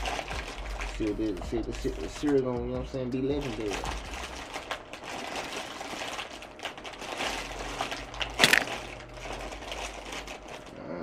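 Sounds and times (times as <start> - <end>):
packaging crinkling and rustling: 0.0 - 2.4, 3.4 - 10.8
loud sharp crackle: 4.2 - 10.7.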